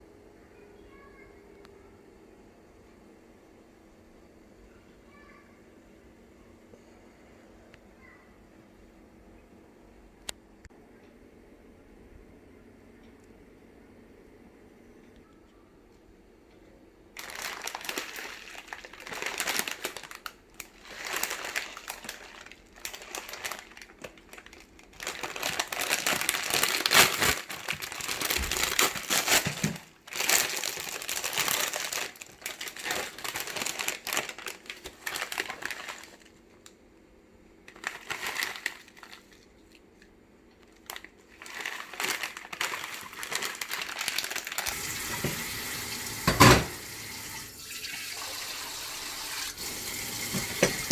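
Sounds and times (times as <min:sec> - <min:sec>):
plastic wrapper crinkling: 0:17.2 - 0:36.8, 0:37.6 - 0:46.3.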